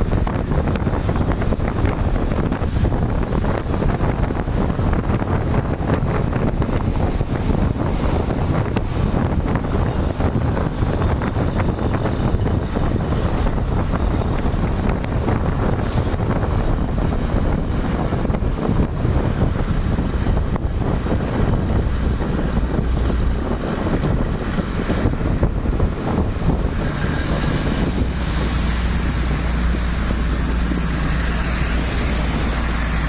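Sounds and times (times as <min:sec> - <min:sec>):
highway traffic rumble: 0:00.0 - 0:33.0
wind buffeting microphone: 0:00.0 - 0:33.0.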